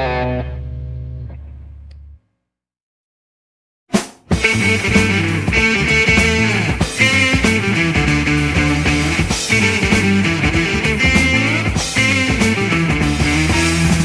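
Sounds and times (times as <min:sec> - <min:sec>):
electric guitar: 0:00.0 - 0:02.1, 0:04.3 - 0:14.0
drum kit: 0:03.9 - 0:14.0
bass line: 0:04.3 - 0:14.0.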